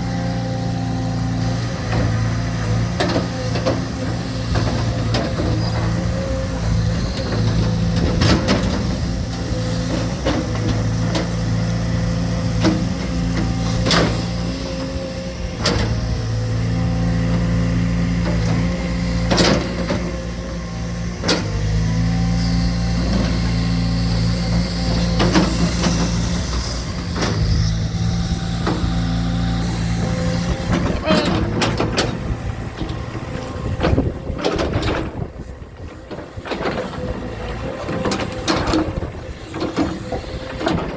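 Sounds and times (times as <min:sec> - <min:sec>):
construction machinery engine hum: 0:00.0 - 0:40.9.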